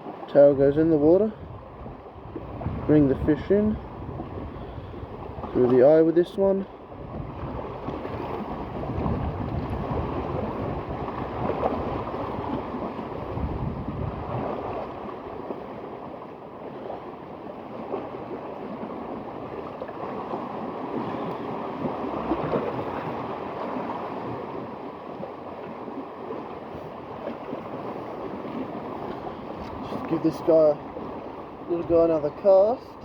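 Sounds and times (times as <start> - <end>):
wind blowing: 0.0 - 15.5, 26.5 - 33.0
sea water washing: 0.0 - 33.0.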